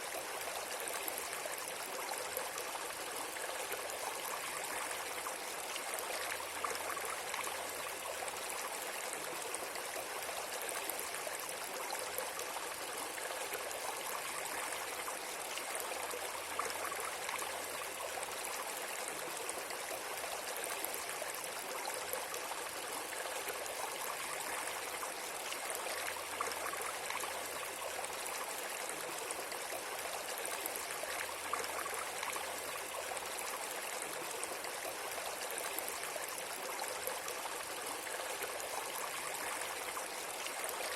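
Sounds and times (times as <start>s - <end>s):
stream water babbling: 0.0s - 40.9s.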